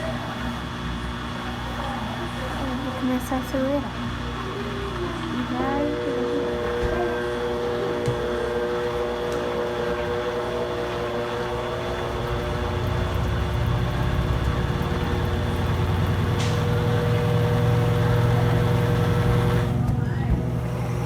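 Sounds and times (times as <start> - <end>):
washing machine spinning: 0.0 - 21.0.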